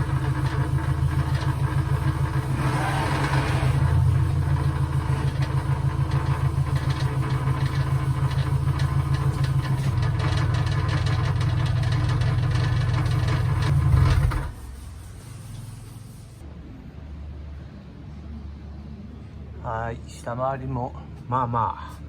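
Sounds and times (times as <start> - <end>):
muffler rattling: 0.0 - 14.6
car engine running: 0.0 - 14.9.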